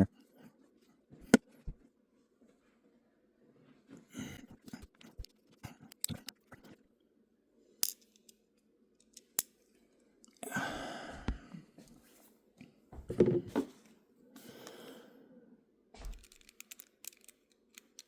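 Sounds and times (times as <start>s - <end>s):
knife parts clicking and tapping: 16.1s - 18.0s.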